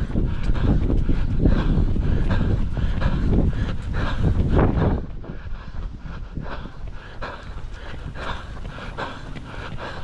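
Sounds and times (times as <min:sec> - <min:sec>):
running footsteps: 0:00.0 - 0:10.0
wind rumble on microphone: 0:00.0 - 0:10.0.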